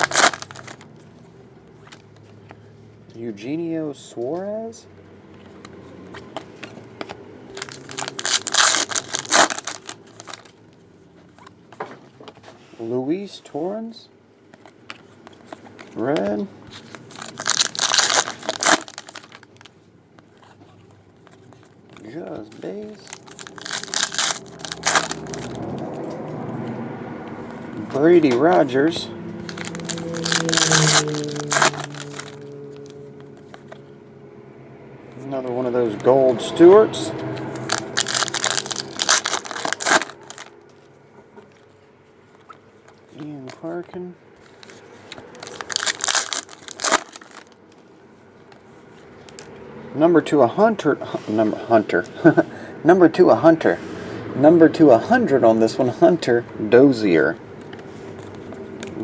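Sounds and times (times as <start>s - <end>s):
packaging crinkling: 0.0s - 0.9s, 7.5s - 10.5s, 16.7s - 19.8s, 22.8s - 25.6s, 29.4s - 33.6s, 37.4s - 40.5s, 44.4s - 47.6s.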